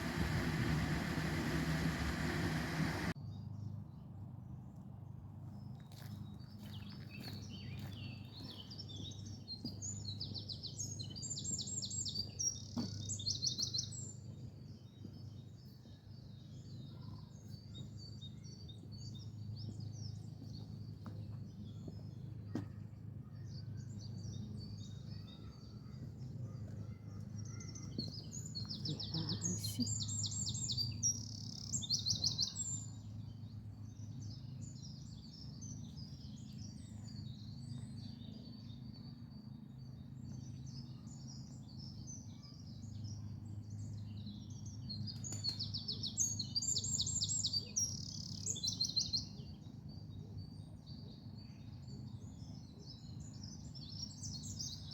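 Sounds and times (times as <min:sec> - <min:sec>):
birds chirping: 0:00.0 - 0:03.2, 0:23.8 - 0:32.6
low rumble: 0:00.0 - 0:03.2.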